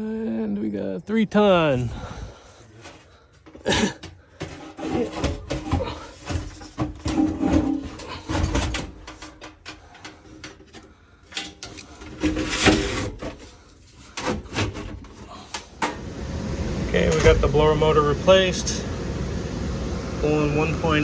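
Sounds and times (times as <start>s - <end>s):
knocks and rattles of handwork: 2.9s - 15.8s.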